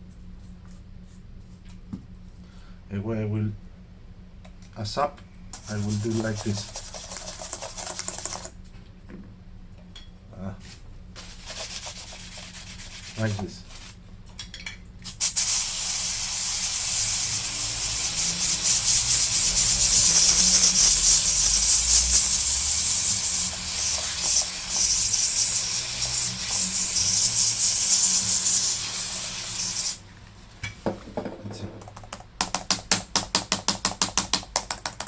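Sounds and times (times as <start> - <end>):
hissing air jet: 15.2 - 30.0.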